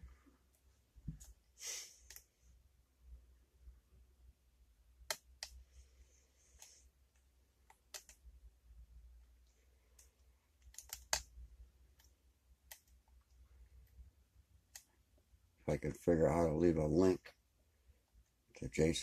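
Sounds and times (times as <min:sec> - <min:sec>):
lock-picking tools clicking: 0:10.0 - 0:11.3.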